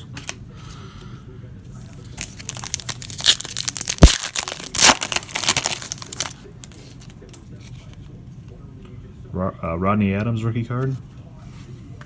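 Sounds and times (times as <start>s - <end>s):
plastic wrapper crinkling and tearing: 2.0s - 7.9s.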